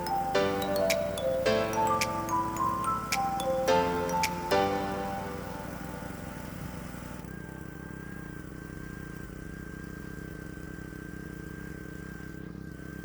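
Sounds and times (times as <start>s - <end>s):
high whine: 0.0s - 8.7s.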